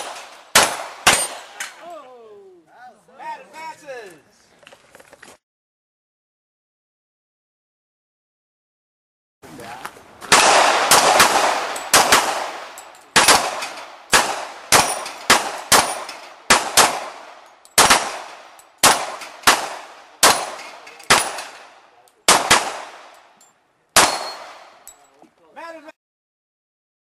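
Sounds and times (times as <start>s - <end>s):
gunshots with echo: 0.0s - 1.8s, 10.3s - 23.2s, 24.0s - 24.8s.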